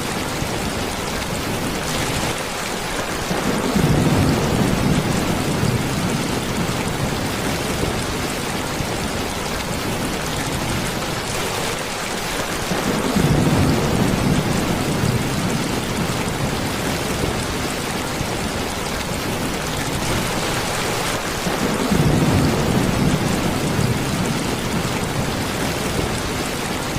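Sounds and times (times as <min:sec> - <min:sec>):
steady rain falling: 0:00.0 - 0:26.9
low rolls of thunder: 0:03.2 - 0:11.1, 0:12.6 - 0:20.4, 0:21.4 - 0:26.6.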